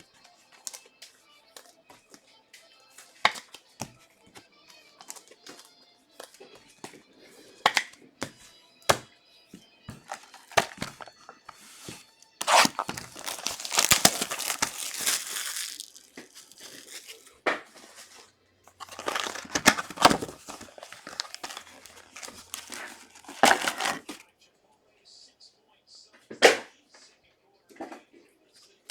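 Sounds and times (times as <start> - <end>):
wrappers tearing and crinkling: 10.0 - 17.3, 18.8 - 24.2.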